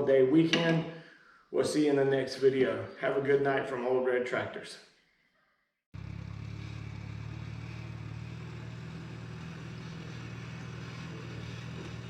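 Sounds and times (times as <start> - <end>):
engine running steadily: 6.0 - 12.0.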